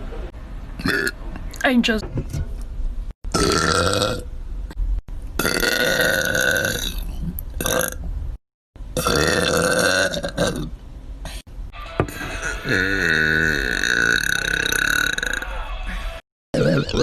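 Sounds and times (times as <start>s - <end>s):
woman burping: 12.3s - 15.5s, 16.6s - 17.0s.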